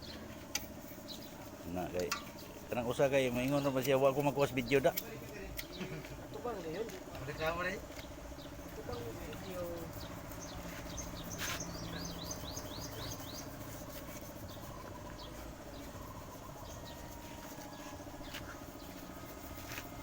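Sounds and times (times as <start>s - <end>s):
bird chirping: 0.0s - 6.1s, 7.3s - 19.9s
steady low hum: 0.0s - 20.0s.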